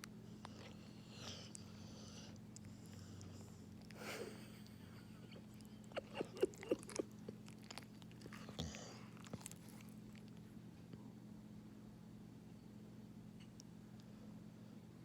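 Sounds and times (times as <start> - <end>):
dog lip-smacking: 5.4 - 10.4.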